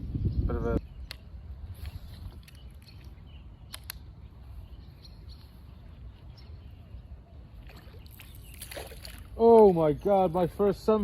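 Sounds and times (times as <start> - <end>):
wind buffeting microphone: 0.0 - 11.0
faint sharp clicks: 1.0 - 4.1.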